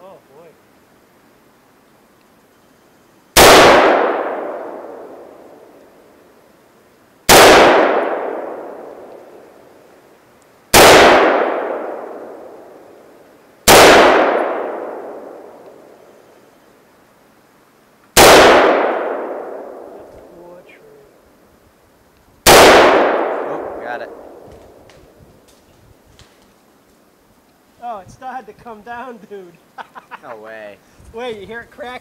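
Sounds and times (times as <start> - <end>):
rifle shots echoing: 3.4 - 6.2, 7.3 - 9.7, 10.7 - 16.0, 18.2 - 20.1, 22.4 - 24.9.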